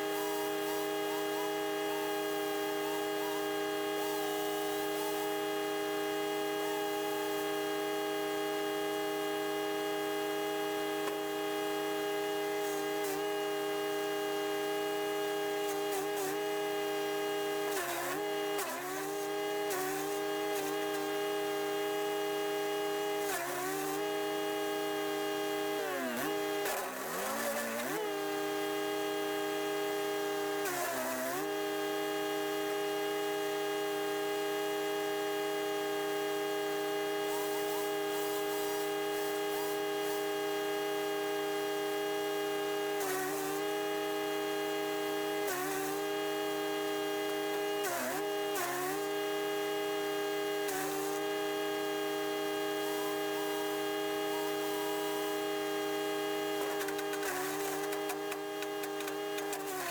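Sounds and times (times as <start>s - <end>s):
wood chipper engine running: 56.4s - 59.8s.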